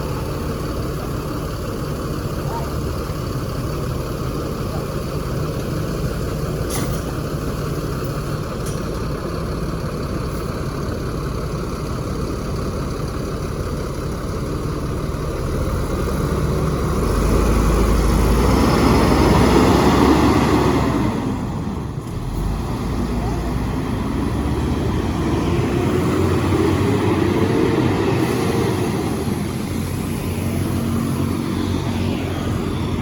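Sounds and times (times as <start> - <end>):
road traffic engine hum: 0.0 - 33.0
large vehicle passing: 15.3 - 33.0.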